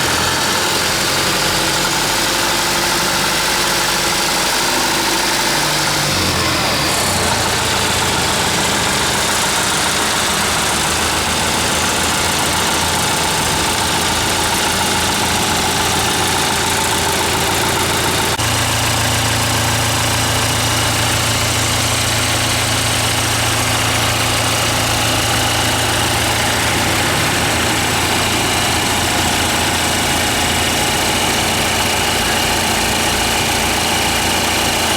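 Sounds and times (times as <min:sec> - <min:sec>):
diesel engine idling: 0:00.0 - 0:34.9.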